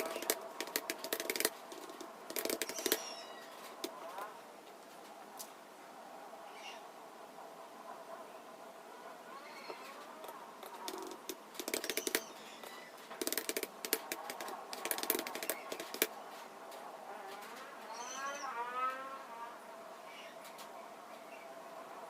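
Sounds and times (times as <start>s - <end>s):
computer keyboard typing: 0.0s - 3.0s, 10.6s - 12.2s, 13.2s - 16.1s.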